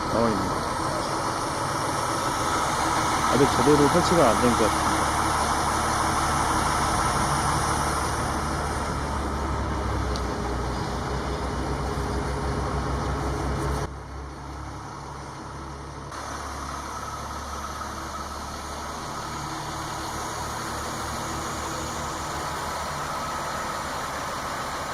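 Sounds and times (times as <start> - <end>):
crane engine droning: 0.0 - 24.9.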